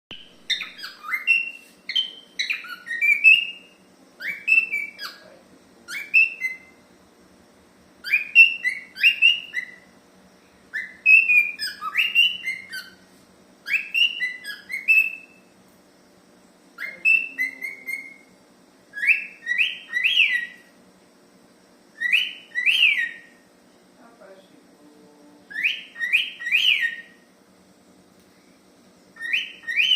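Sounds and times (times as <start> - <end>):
cockatiel whistling: 0.1 - 5.3, 5.9 - 6.8, 8.0 - 9.9, 10.7 - 13.0, 13.6 - 15.5, 16.8 - 18.3, 18.9 - 20.7, 22.0 - 23.4, 25.5 - 27.2, 29.2 - 29.9.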